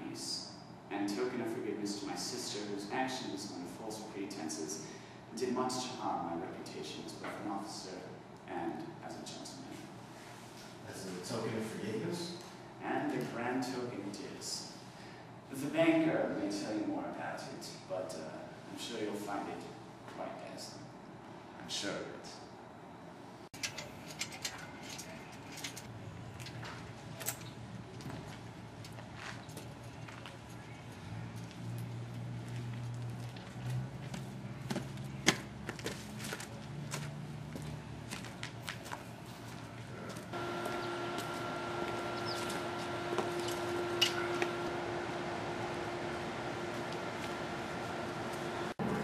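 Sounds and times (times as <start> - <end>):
steady background hiss: 0.0 - 23.9
faint steady background noise: 0.0 - 43.9
faint hum: 38.9 - 49.0.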